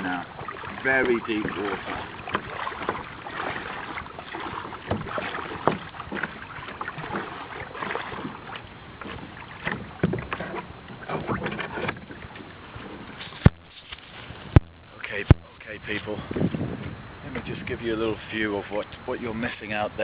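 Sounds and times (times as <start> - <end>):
kayak paddle splashing in water: 0.0 - 16.7.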